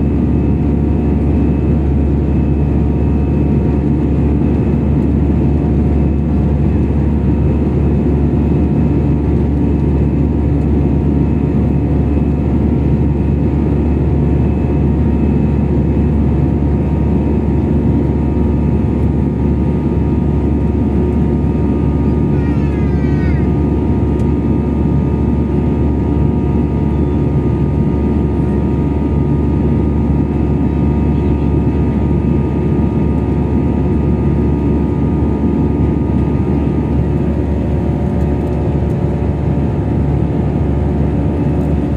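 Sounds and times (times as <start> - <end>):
jet airliner cabin drone: 0.0 - 41.9.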